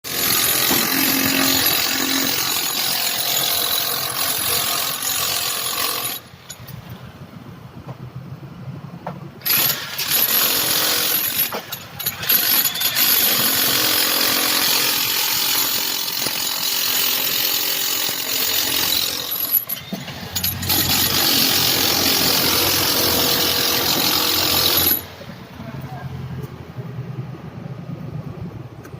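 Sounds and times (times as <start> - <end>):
loud power tool running: 0.1 - 6.2, 20.4 - 25.1.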